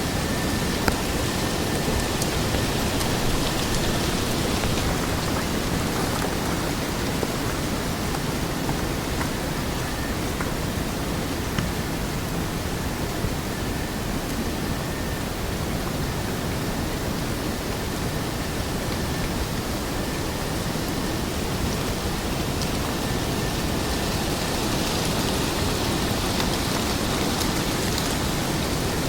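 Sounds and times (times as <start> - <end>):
rushing water-like noise: 0.0 - 29.0.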